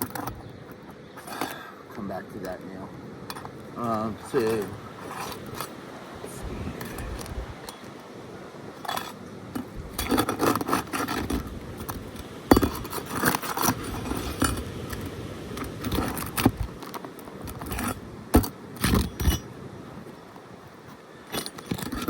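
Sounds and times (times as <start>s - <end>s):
metal bar scraping on shingles: 3.3s - 5.8s, 8.7s - 19.6s.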